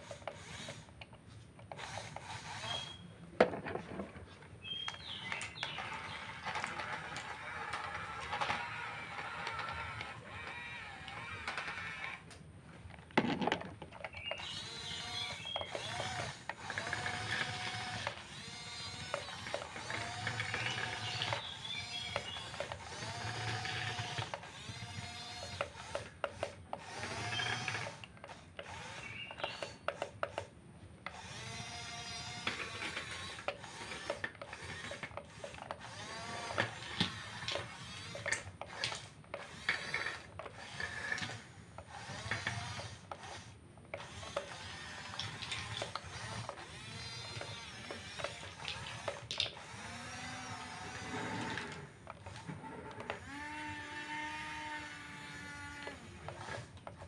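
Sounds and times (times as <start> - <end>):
clicks: 0.0 - 18.3
small electric motors whining: 0.0 - 57.0.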